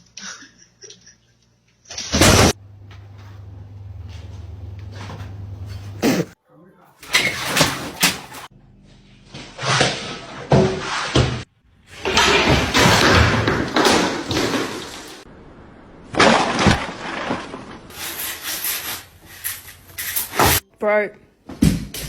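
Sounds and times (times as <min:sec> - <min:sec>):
loud bangs and thumps: 0:10.5 - 0:15.3, 0:16.1 - 0:18.0.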